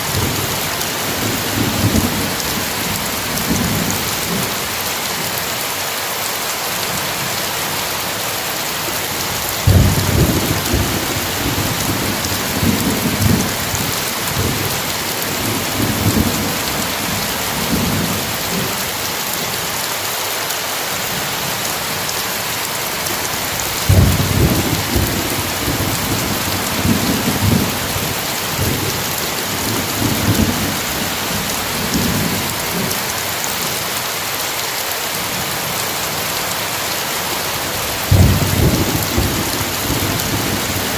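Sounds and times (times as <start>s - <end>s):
heavy rain: 0.0s - 40.9s
thunder rolling: 23.9s - 29.0s.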